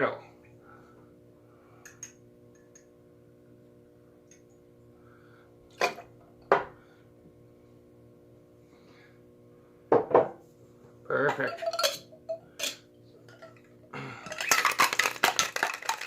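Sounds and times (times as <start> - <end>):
steady low hum: 0.0 - 16.0
glassware set down on counter: 5.8 - 6.7, 9.9 - 10.4.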